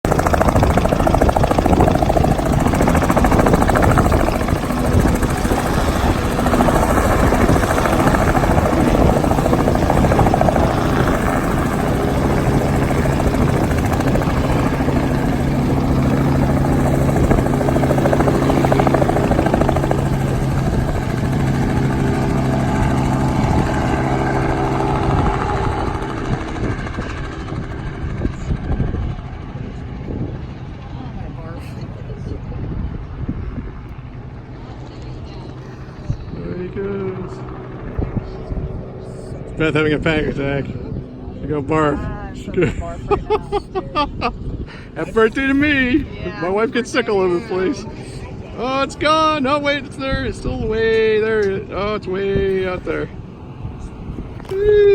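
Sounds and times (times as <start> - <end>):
helicopter rotor chop: 0.0 - 54.9
steady low hum: 0.1 - 27.3.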